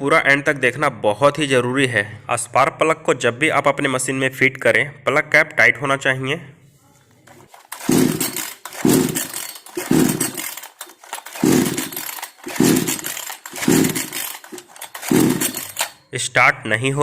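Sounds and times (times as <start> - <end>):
chainsaw pull-start cranking: 7.3 - 16.1.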